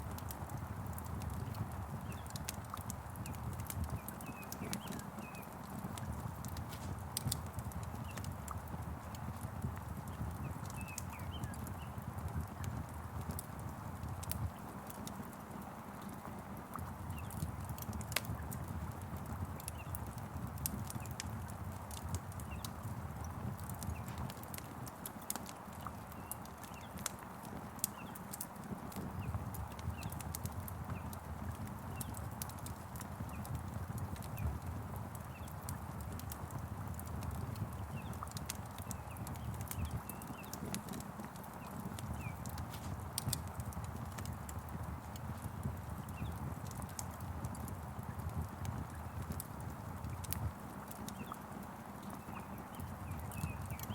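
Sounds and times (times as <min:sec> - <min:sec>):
low rumble of burning: 0:00.0 - 0:53.9
wood fire crackling and popping: 0:00.0 - 0:53.9.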